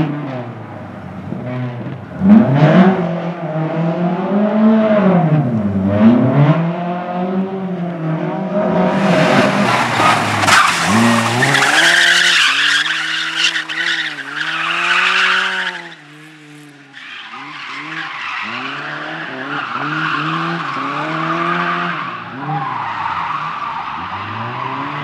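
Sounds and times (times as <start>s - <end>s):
car engine revving hard: 8.2s - 16.8s
tyres squealing: 9.7s - 16.2s.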